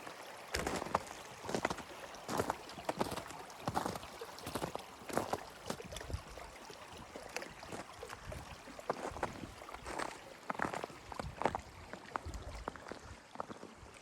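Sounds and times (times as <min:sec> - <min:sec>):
crunching in snow: 0:00.6 - 0:05.3.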